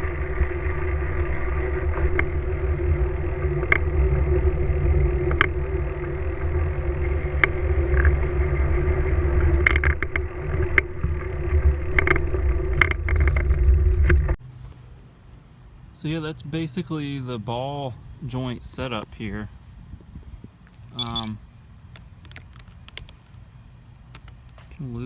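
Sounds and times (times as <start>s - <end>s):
bike clicks and rattles: 0.0s - 14.4s, 20.1s - 25.0s
wind and road rumble: 0.0s - 25.0s.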